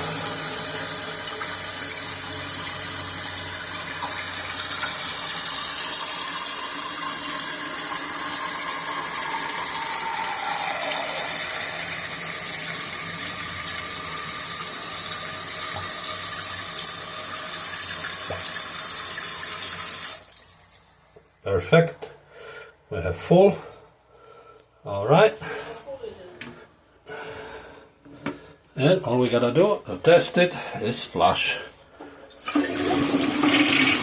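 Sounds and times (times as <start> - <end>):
water hissing into toilet tank: 0.0 - 21.3, 32.4 - 34.0
faint falling tone: 8.9 - 12.1.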